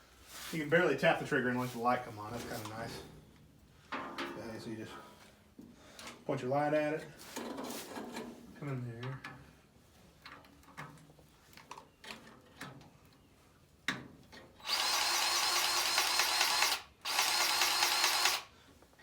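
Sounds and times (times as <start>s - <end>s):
grease gun motor running: 14.6s - 18.5s.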